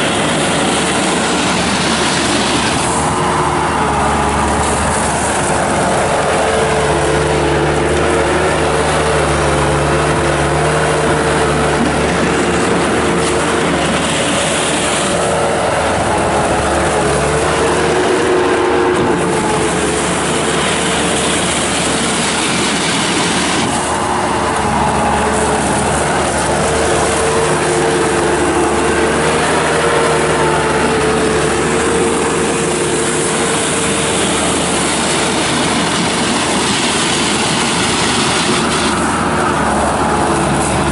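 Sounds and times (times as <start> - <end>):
diesel engine with whining tone: 0.0 - 40.9
hiss: 31.6 - 40.9.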